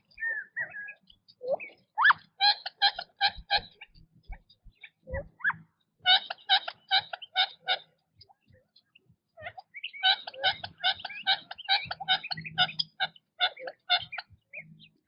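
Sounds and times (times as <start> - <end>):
quail chattering calls: 0.0 - 8.7, 9.4 - 15.0.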